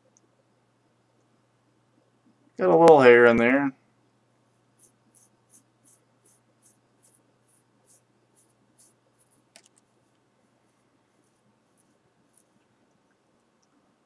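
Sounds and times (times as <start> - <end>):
knife scraping across hair: 4.8 - 9.8.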